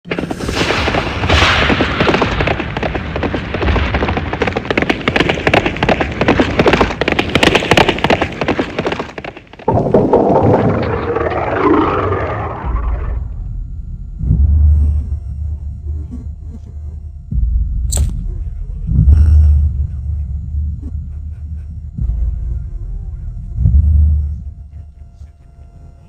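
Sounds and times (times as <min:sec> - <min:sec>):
cartoon cracks bangs and clatter: 0:00.1 - 0:13.1
loud noise with wavering pitch: 0:09.7 - 0:16.2.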